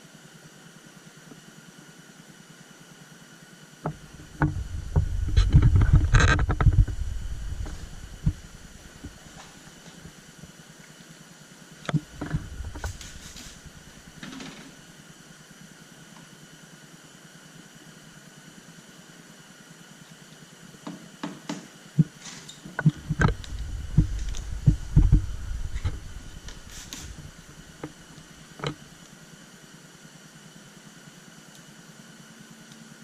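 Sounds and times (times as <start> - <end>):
steady background hum: 0.0 - 33.0
handling bumps: 3.9 - 10.1, 22.8 - 28.8
light knocks and clicks: 22.8 - 28.0.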